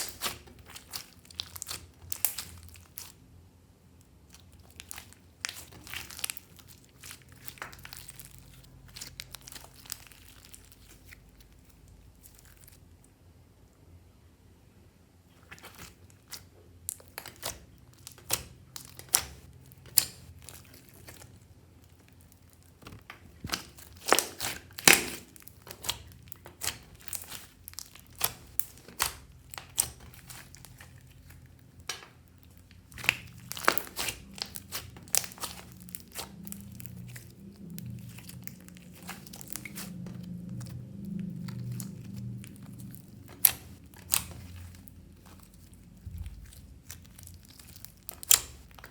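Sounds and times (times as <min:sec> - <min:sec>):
slime popping and crackling: 0:00.0 - 0:03.2, 0:04.2 - 0:12.8, 0:15.4 - 0:48.9.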